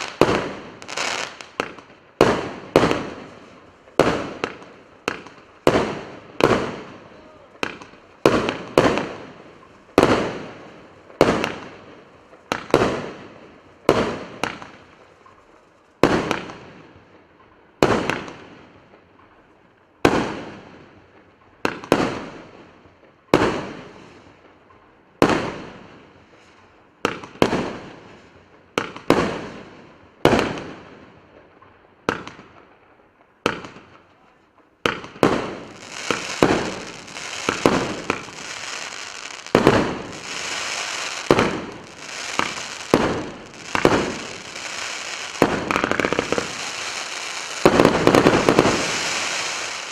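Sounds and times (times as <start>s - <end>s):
firework bangs: 0.0s - 16.8s, 17.8s - 18.5s, 27.1s - 28.0s, 28.8s - 29.6s, 34.8s - 49.9s
firework crackling: 0.0s - 16.8s, 33.5s - 49.9s.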